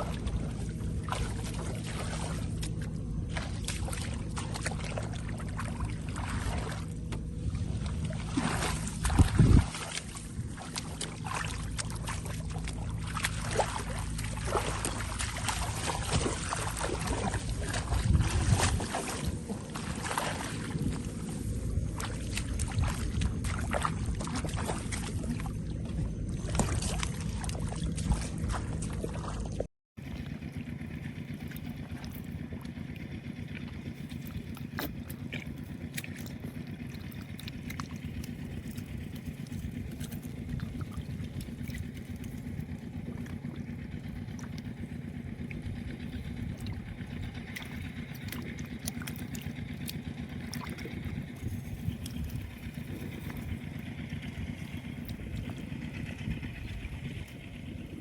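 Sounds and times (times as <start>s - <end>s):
splashing in shallow muddy water: 0.0s - 58.0s
steady low hum: 0.0s - 58.0s.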